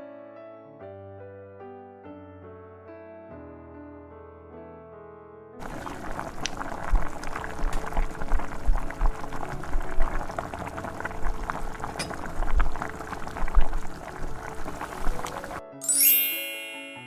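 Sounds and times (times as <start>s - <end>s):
bubbling liquid: 5.6s - 15.6s
bright chime: 15.7s - 17.0s.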